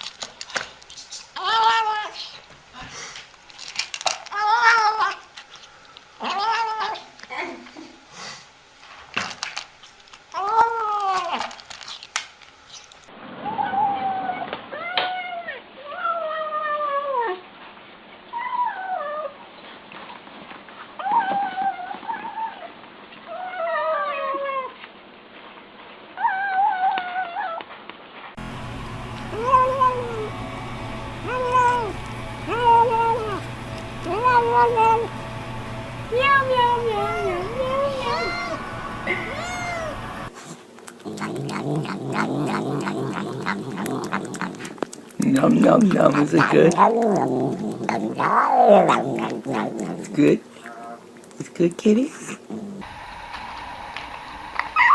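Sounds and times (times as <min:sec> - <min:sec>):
cat mewing: 0:29.3 - 0:30.3, 0:31.2 - 0:35.1, 0:36.1 - 0:40.3, 0:41.1 - 0:44.9
cat murmuring while eating: 0:31.2 - 0:35.2, 0:39.2 - 0:52.8
chewing clicks: 0:40.4 - 0:50.0.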